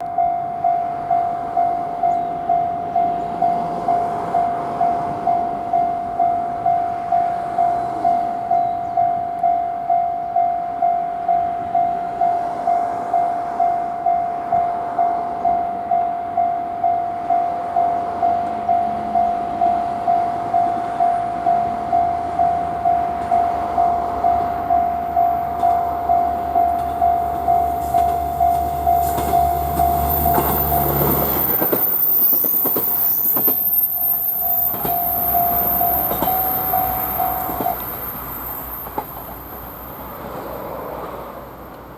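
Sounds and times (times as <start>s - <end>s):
level crossing bell ringing: 0.0s - 37.9s
diesel railcar rumble: 0.0s - 41.9s.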